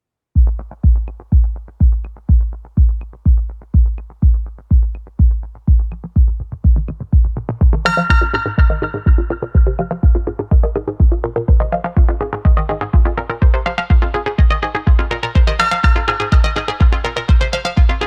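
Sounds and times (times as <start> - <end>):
kick drum: 0.4 - 18.0
ticking hi-hats: 0.4 - 18.0
bright synth chord: 7.9 - 10.4.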